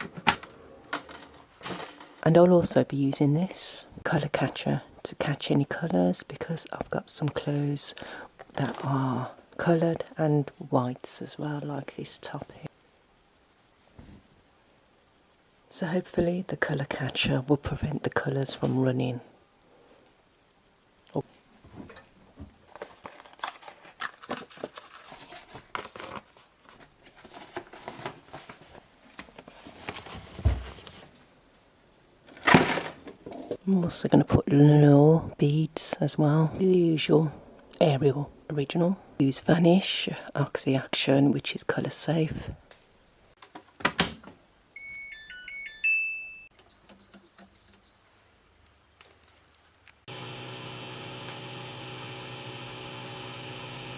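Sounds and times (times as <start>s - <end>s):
packaging and fabric rustling: 22.7s - 31.0s
high button beeps: 46.6s - 48.2s.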